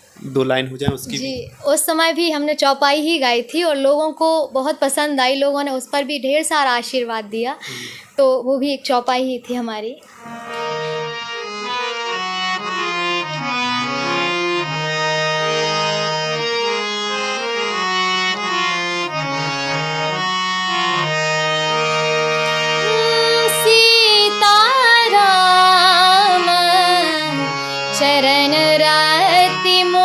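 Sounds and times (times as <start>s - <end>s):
harmonium playing: 1.0s - 6.5s, 10.2s - 30.0s
woman singing: 1.1s - 2.4s, 22.7s - 30.0s.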